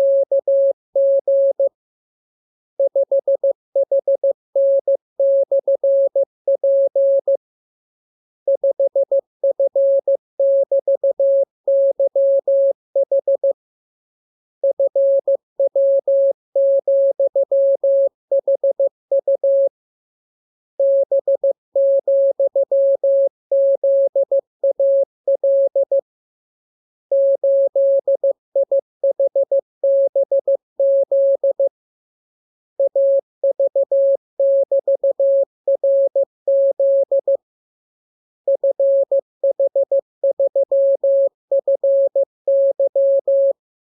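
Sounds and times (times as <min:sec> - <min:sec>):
morse code beeps: 0:42.5 - 0:43.6.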